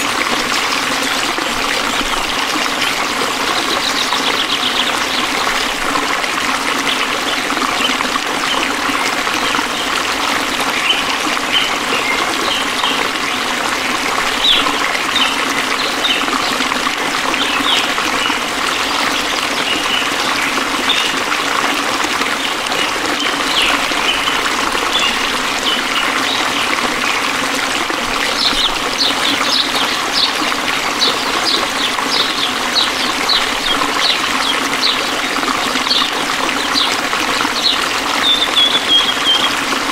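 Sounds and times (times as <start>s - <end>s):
water trickling: 0.0s - 39.9s.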